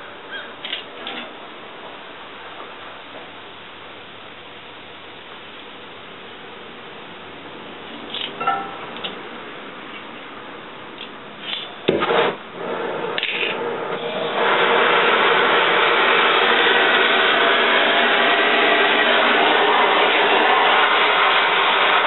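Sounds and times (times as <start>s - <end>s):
metal clank and knocks: 8.4s - 9.0s
steady rushing rasping noise: 12.1s - 22.0s.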